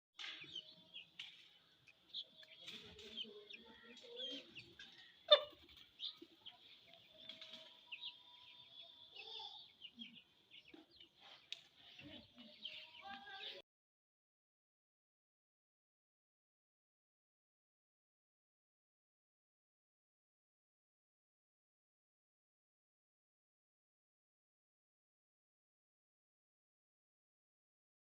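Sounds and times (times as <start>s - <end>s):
chickens clucking: 0.2s - 13.6s.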